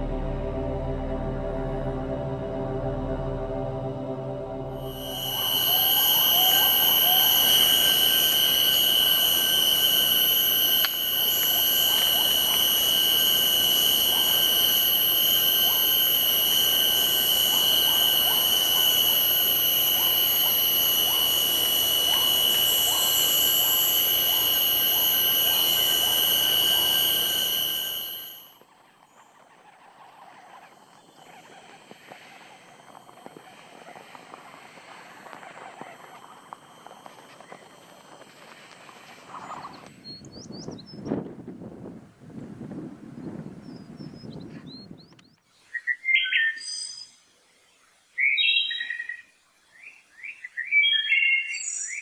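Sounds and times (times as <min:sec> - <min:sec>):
high-pitched insect trilling: 0:04.7 - 0:28.6.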